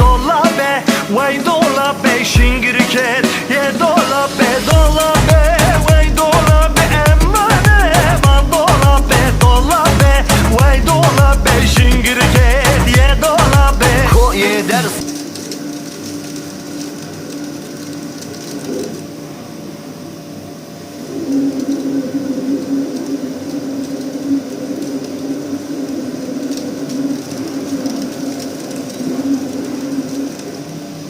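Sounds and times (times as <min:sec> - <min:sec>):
sung music track: 0:00.0 - 0:15.6
machine humming: 0:00.0 - 0:31.0.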